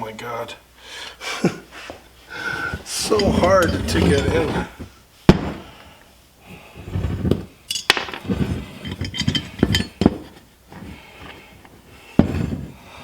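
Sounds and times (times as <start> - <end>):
rustling handling noise: 1.8 - 5.0
metal parts clinking: 2.9 - 4.7, 7.7 - 10.1.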